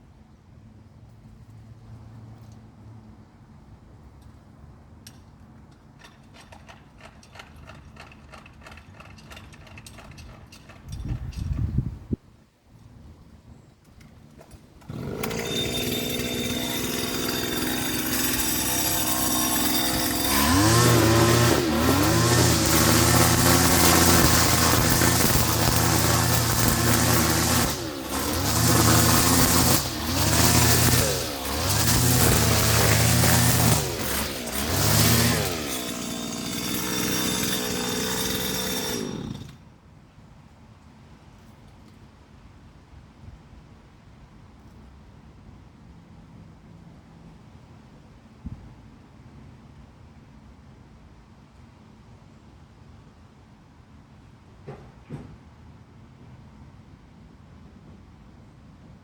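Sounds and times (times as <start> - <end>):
lawn mower engine running: 14.8 - 39.5.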